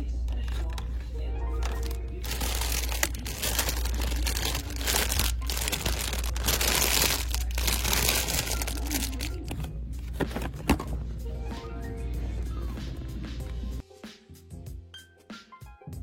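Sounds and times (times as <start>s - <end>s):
plastic crinkling and rustling: 1.6s - 9.6s.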